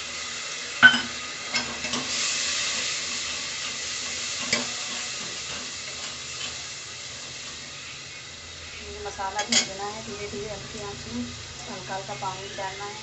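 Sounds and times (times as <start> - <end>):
food sizzling in oil: 0.0 - 13.0
spoon knocking against pot: 0.8 - 1.2.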